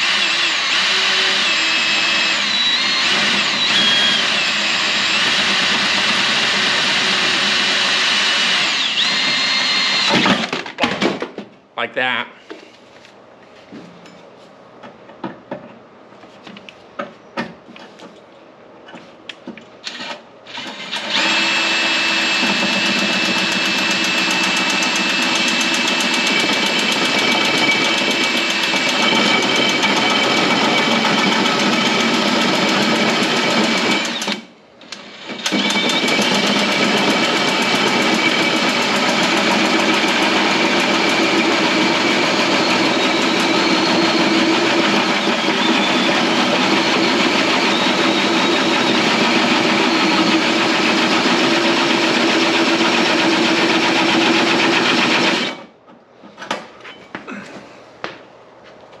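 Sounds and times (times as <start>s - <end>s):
power drill cutting metal: 0.0s - 10.5s, 19.8s - 55.7s.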